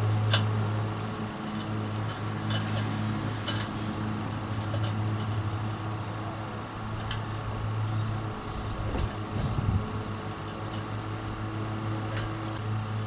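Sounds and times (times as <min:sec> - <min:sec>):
steady low hum: 0:00.0 - 0:13.0.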